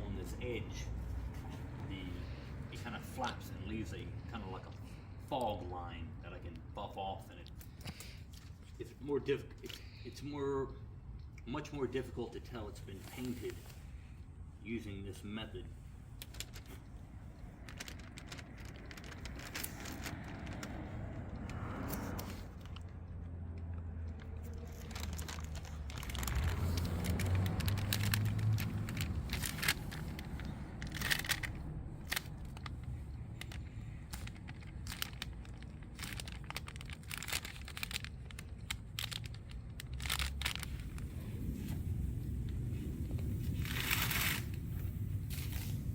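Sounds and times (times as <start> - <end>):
crinkling of masking material: 0.0 - 14.2, 14.8 - 45.9
masking tape pulled and torn: 16.1 - 22.9, 23.6 - 45.9.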